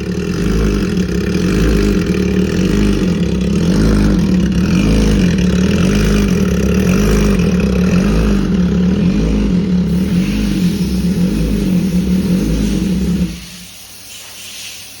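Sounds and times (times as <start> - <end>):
motorcycle engine running: 0.0 - 13.7.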